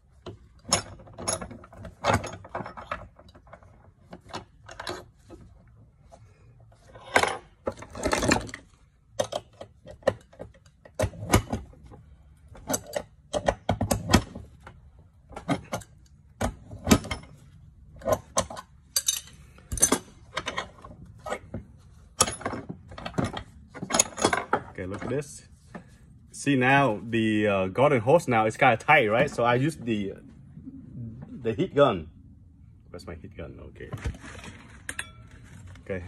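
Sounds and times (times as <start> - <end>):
metal fittings clinking: 18.9 - 20.6.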